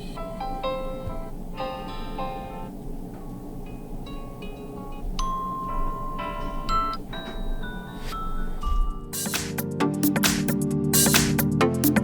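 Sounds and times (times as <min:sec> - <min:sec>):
chiming alarm tone melody: 0:05.2 - 0:09.4.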